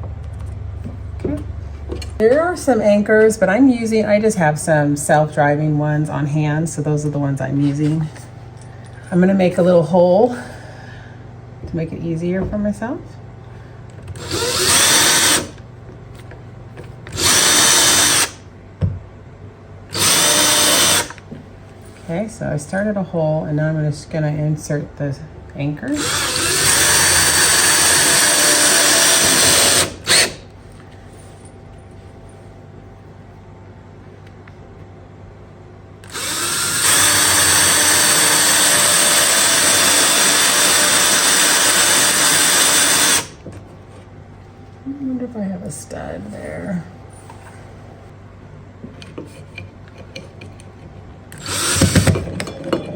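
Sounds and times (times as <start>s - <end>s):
power drill spinning: 14.1s - 15.6s, 17.1s - 18.4s, 19.9s - 21.2s, 25.9s - 30.5s, 36.0s - 43.4s, 51.3s - 52.5s.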